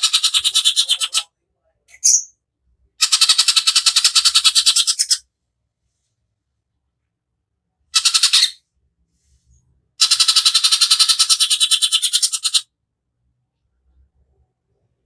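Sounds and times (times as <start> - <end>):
bird singing harsh rapid trills: 0.0 - 1.3, 3.0 - 5.2, 10.0 - 12.6.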